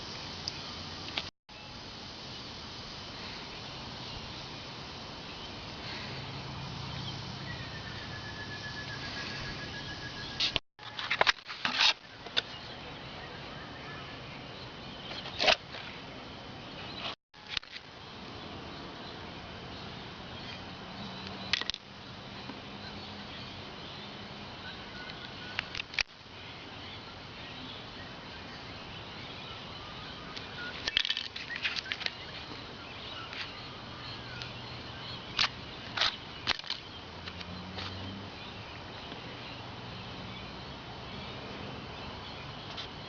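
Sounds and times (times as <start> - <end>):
steady hiss: 0.0 - 10.6, 15.9 - 37.7.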